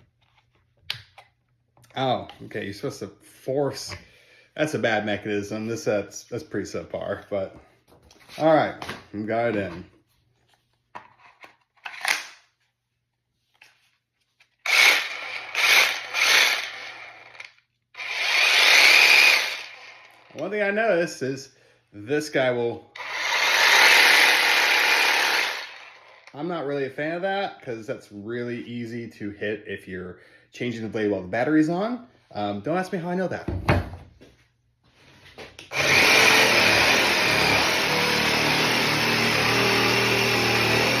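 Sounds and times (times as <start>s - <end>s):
cordless jigsaw cutting: 14.6s - 20.3s, 23.0s - 26.3s, 35.7s - 41.0s.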